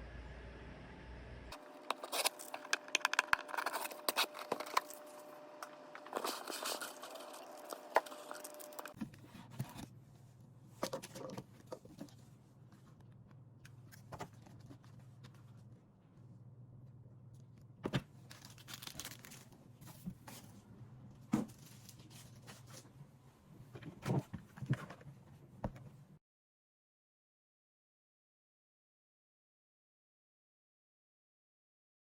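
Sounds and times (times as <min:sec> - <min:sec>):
rustling and crinkling: 0:01.5 - 0:16.3, 0:17.4 - 0:26.1.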